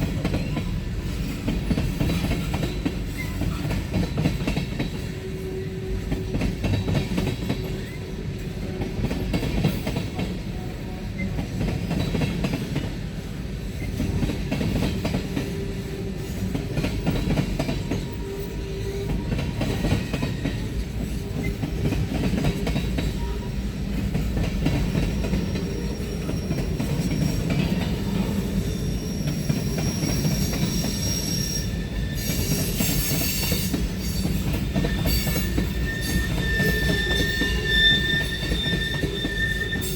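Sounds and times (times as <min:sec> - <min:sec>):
high-pitched wheel squeal: 0:28.6 - 0:39.9.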